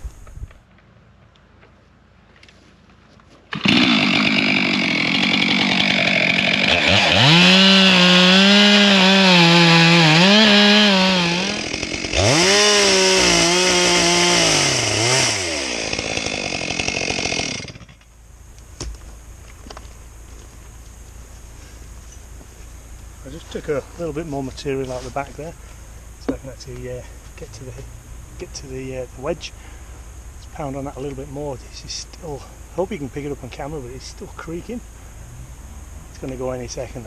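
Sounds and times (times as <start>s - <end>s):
chainsaw cutting wood: 3.5s - 29.8s.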